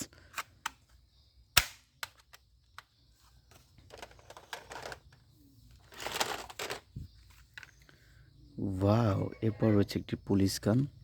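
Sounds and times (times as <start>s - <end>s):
rustling handling noise: 3.1s - 7.9s.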